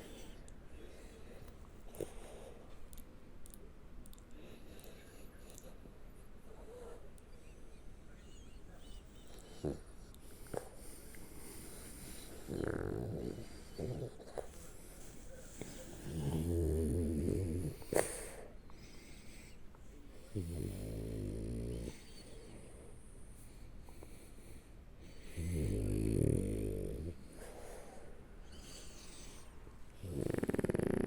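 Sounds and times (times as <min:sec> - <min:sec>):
dog snoring: 0:08.2 - 0:19.6, 0:20.2 - 0:22.9, 0:25.1 - 0:31.0.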